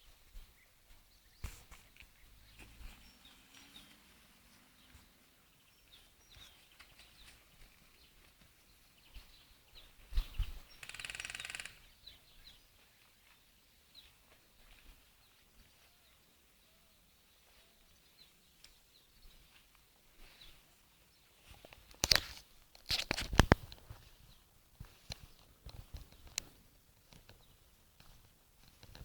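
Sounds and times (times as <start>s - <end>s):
birds chirping: 0.0s - 21.9s
sharp clicks: 10.8s - 11.9s
short rapid rattling burst: 10.8s - 11.9s.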